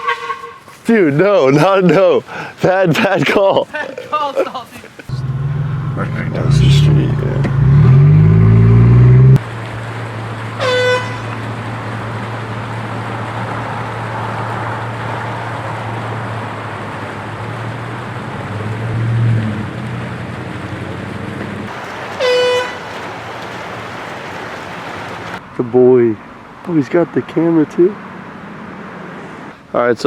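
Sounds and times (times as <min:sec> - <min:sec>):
handheld air horn blasts: 0:00.0 - 0:00.8, 0:10.6 - 0:11.4, 0:22.2 - 0:22.8
low-pitched blare: 0:05.1 - 0:09.4.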